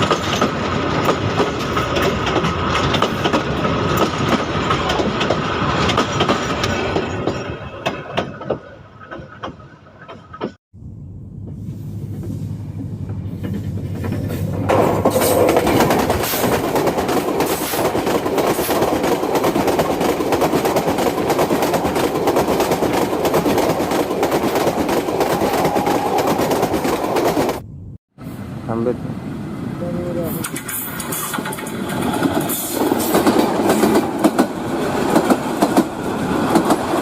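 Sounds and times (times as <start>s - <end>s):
train wheels clattering on rails: 0.0s - 10.6s, 12.1s - 27.6s, 30.3s - 37.0s
low hum: 10.8s - 15.0s.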